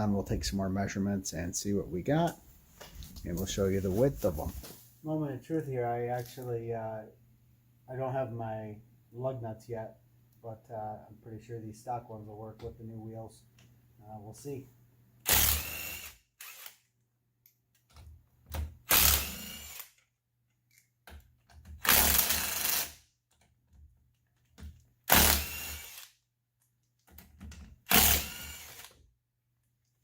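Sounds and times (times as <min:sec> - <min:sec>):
power tool bursts: 0:15.3 - 0:16.8, 0:18.9 - 0:19.9, 0:21.9 - 0:23.0, 0:25.1 - 0:26.1, 0:27.9 - 0:28.9.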